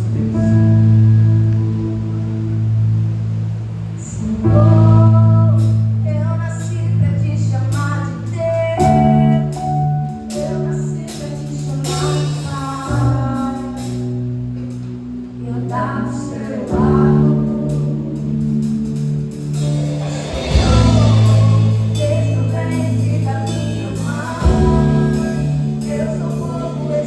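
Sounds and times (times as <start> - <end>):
worship band singing: 15.4 - 27.0
light percussion: 15.8 - 27.0.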